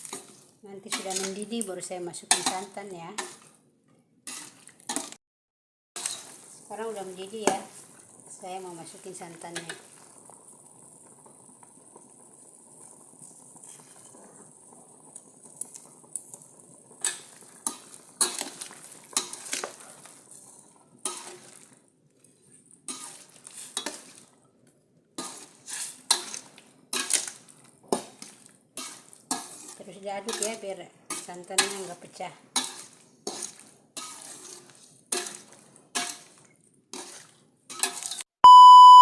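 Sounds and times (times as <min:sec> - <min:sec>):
spoon clinking and scraping pan: 0:02.2 - 0:03.6, 0:04.3 - 0:05.1, 0:06.0 - 0:06.4, 0:17.0 - 0:21.8, 0:22.8 - 0:24.3, 0:25.2 - 0:38.3
broth simmering with hiss: 0:06.0 - 0:37.3.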